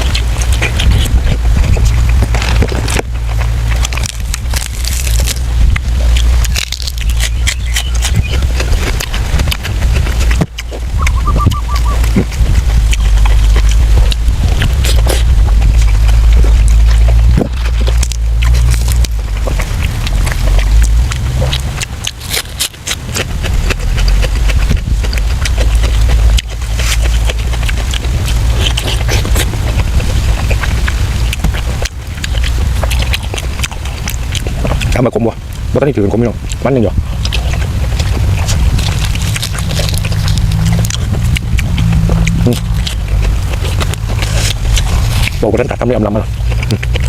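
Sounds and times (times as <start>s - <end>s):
close chewing and biting: 0.0s - 47.0s
low rumble: 0.0s - 47.0s.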